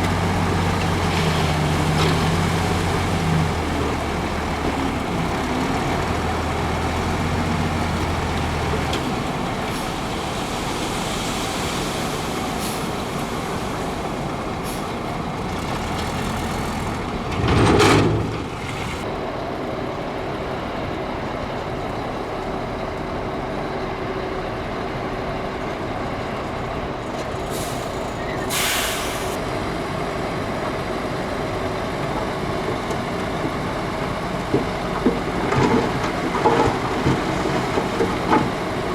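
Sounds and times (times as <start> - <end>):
heavy diesel machinery running: 0.0 - 38.9
loud hiss: 28.5 - 29.4.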